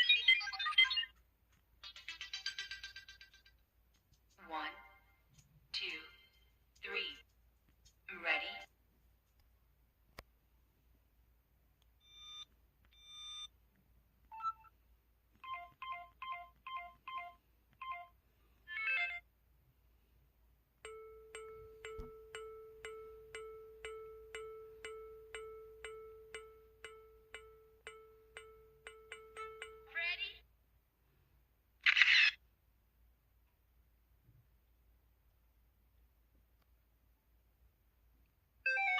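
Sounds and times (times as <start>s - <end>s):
self-timer ticks: 5.3s - 8.1s, 20.8s - 29.9s.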